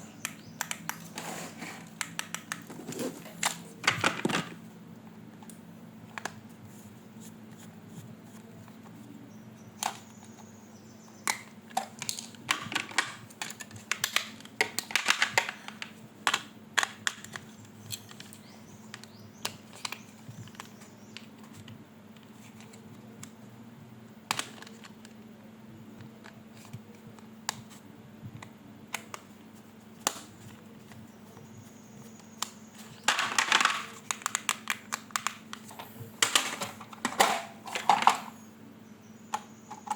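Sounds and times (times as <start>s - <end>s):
faint steady hum: 0.0s - 39.9s.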